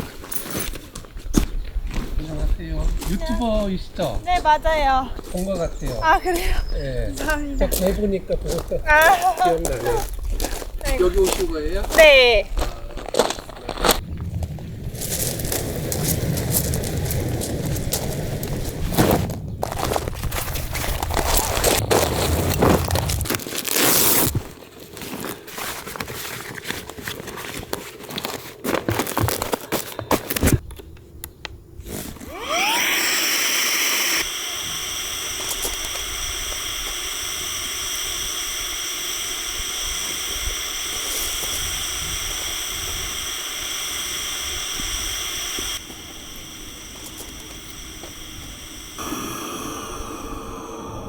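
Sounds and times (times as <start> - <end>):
whirring with high whine: 32.2 - 51.0.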